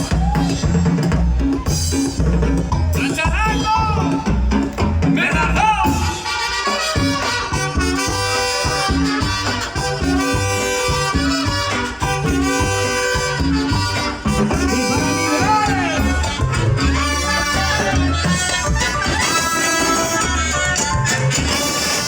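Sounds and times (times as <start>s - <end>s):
bass and percussion beat: 0.0s - 22.0s
brass section playing chords: 5.8s - 22.0s.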